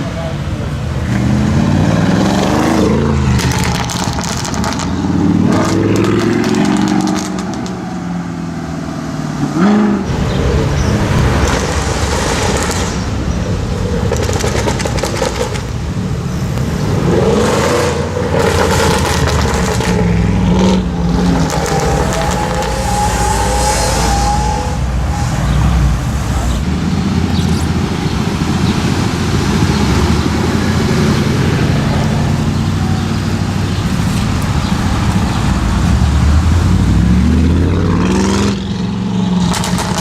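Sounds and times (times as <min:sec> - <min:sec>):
car engine revving: 0:00.0 - 0:40.0
exhaust crackles: 0:09.6 - 0:38.7.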